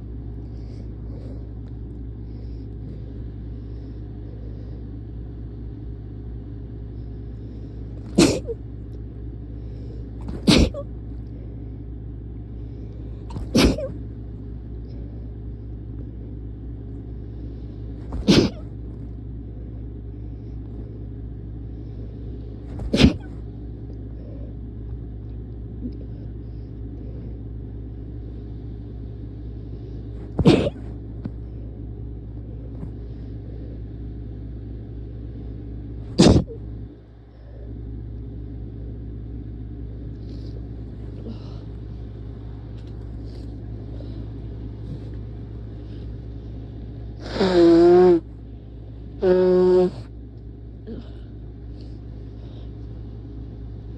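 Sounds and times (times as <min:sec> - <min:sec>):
steady low rumble: 0:00.0 - 0:53.9
person sneezing: 0:08.0 - 0:08.6, 0:10.2 - 0:10.9, 0:13.3 - 0:14.0, 0:18.1 - 0:18.8, 0:22.7 - 0:23.4, 0:30.3 - 0:31.0, 0:36.1 - 0:36.6.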